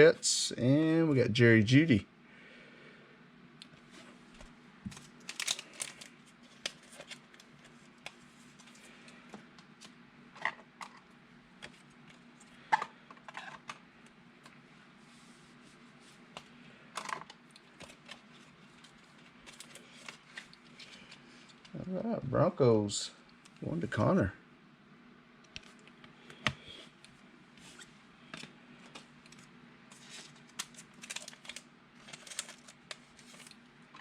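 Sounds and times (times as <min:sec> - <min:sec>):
faint low hum: 0:00.0 - 0:34.0
cards clicking and rustling: 0:04.9 - 0:08.9, 0:28.3 - 0:34.0.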